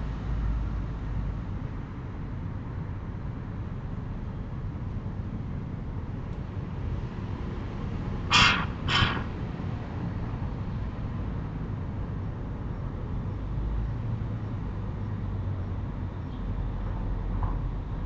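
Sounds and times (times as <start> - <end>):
crow cawing: 8.3 - 9.4.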